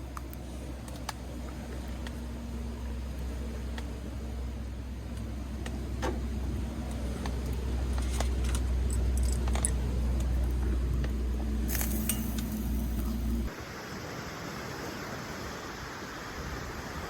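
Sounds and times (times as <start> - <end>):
vehicle rumble: 0.0 - 13.6
light clicks and rattles: 6.9 - 13.2.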